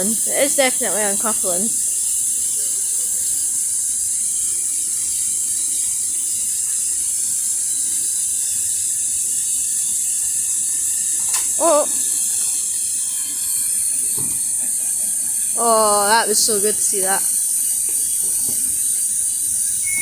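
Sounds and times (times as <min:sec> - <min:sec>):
compressed air hissing: 0:00.0 - 0:20.0.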